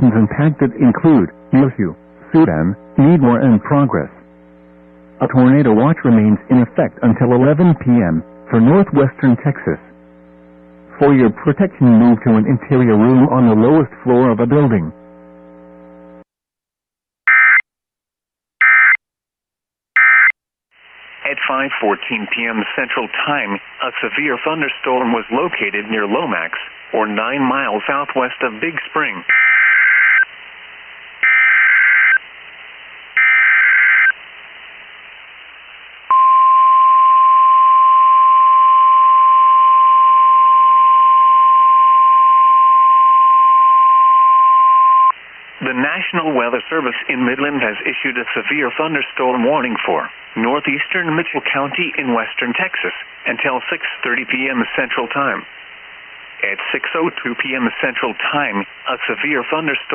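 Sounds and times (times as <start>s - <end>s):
faint steady hum: 0.0s - 16.3s, 20.8s - 59.9s
buzzy data burst screeches: 29.3s - 30.2s, 31.2s - 32.2s, 33.2s - 34.2s
steady warning alarm tone: 31.2s - 32.2s, 33.2s - 34.2s.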